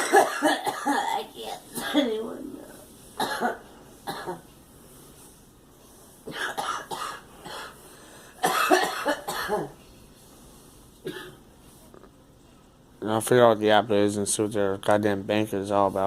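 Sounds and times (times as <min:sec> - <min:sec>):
girl coughing: 0:00.0 - 0:02.4, 0:03.2 - 0:04.5, 0:06.3 - 0:07.8, 0:08.4 - 0:09.8, 0:11.0 - 0:11.4.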